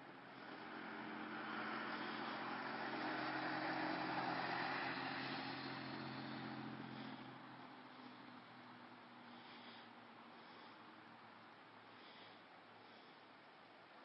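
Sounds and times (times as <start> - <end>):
low engine hum: 0.0 - 14.0
vehicle tyre noise on snow: 0.0 - 14.0.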